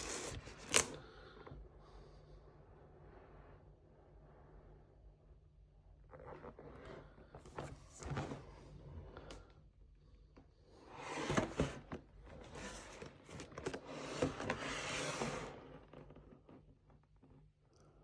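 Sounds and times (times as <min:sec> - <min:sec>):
packaging rustling and crinkling: 0:00.0 - 0:01.0.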